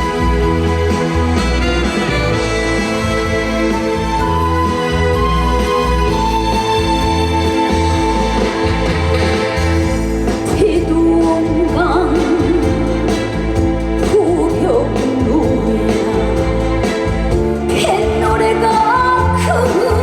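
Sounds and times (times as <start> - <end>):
band playing pop song: 0.0 - 20.0
woman singing with vibrato: 10.4 - 20.0.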